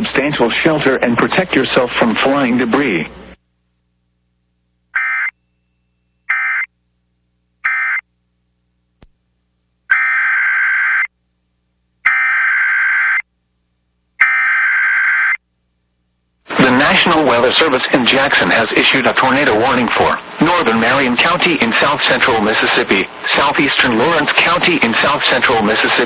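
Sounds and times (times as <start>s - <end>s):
emergency alert data bursts: 5.0s - 5.4s, 6.3s - 6.7s, 7.6s - 8.0s, 9.9s - 11.1s, 12.0s - 13.2s, 14.2s - 15.4s.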